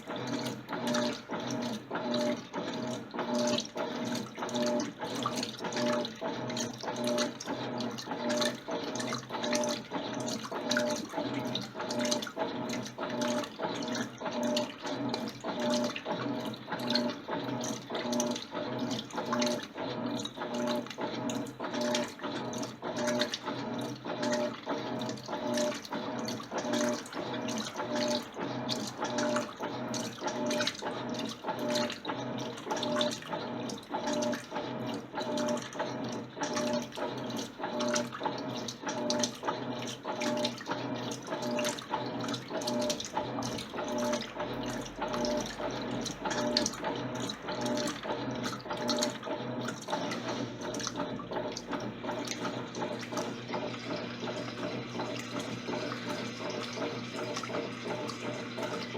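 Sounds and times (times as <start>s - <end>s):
rhythmic water sloshing: 0.0s - 58.9s
washing machine motor hum: 0.0s - 58.9s.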